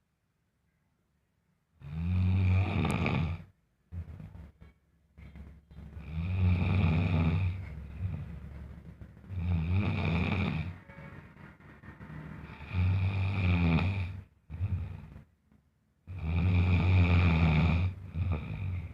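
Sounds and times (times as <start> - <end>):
loud snoring: 1.8 - 4.1, 6.0 - 8.3, 9.3 - 10.8, 12.4 - 15.2, 16.1 - 18.9.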